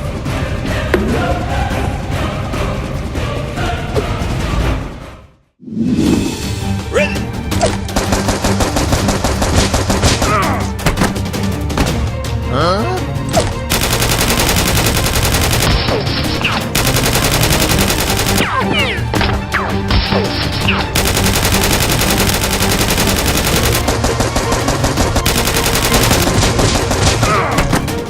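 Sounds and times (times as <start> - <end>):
background music: 0.0 - 28.0
automatic gunfire: 8.0 - 10.3, 13.7 - 16.0, 16.7 - 18.6, 21.0 - 27.4.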